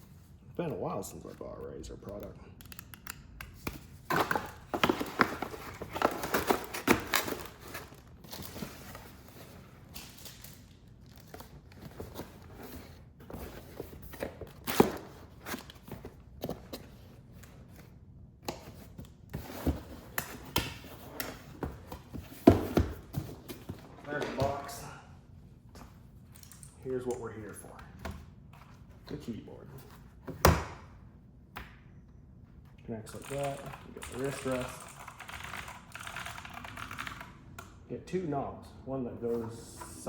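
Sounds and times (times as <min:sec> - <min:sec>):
cardboard and paper rustling: 0:04.0 - 0:17.8.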